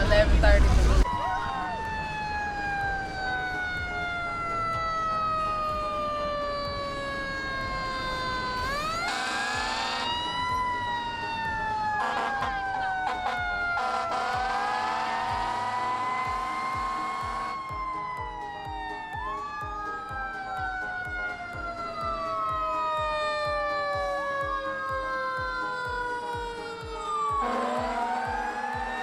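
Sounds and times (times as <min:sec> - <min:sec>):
emergency sirens wailing: 0:00.0 - 0:29.0
steady low thumping beat: 0:16.3 - 0:29.0.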